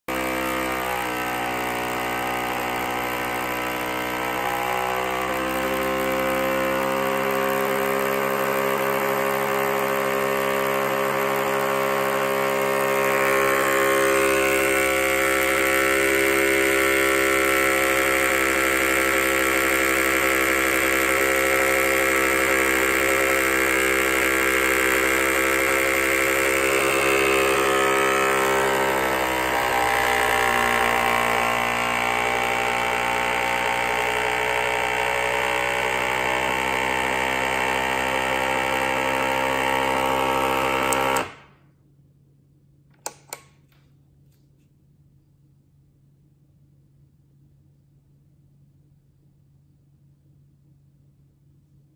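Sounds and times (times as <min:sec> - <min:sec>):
harsh high whine: 0:00.1 - 0:41.5
loud mechanical hum: 0:00.1 - 0:41.6.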